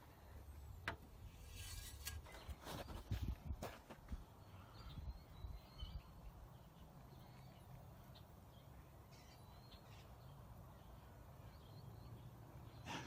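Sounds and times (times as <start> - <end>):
faint high bird chirps: 4.4 - 12.9.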